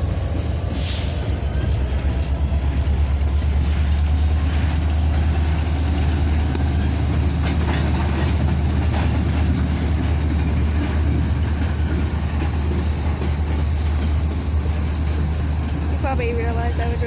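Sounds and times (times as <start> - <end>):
freight train rumble: 0.0 - 17.0
wheels clicking over rails: 1.6 - 17.0.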